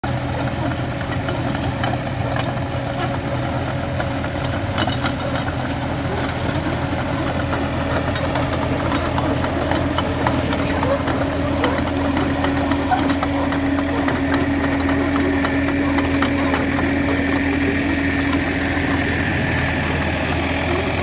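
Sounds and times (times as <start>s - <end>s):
excavator diesel engine running: 0.0s - 21.0s.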